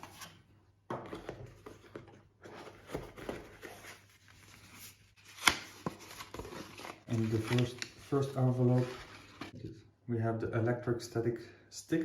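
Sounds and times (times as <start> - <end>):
packaging rustling: 5.2 - 9.6.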